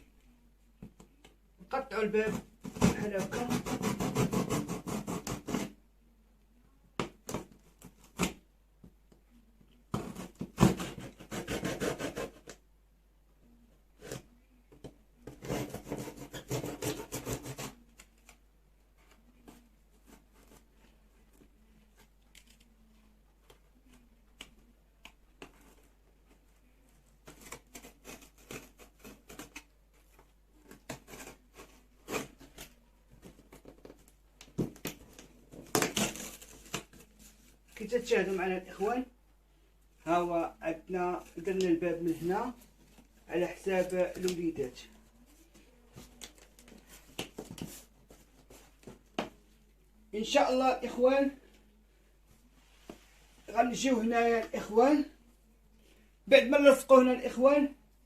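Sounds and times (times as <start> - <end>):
knife cutting cardboard: 2.2 - 5.8, 9.9 - 12.6, 15.2 - 18.4, 27.2 - 37.3.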